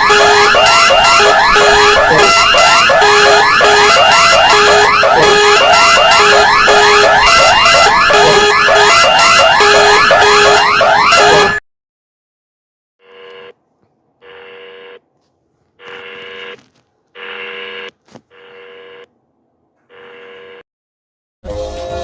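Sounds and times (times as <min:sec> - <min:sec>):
buzzy electronic beeps: 0:00.0 - 0:11.6.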